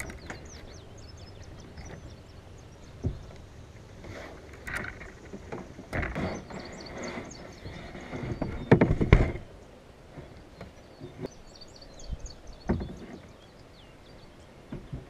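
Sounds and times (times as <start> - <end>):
small birds chirping: 0.0 - 3.9, 4.8 - 9.8, 10.4 - 15.0
knocks of gear in kayak: 8.2 - 9.5.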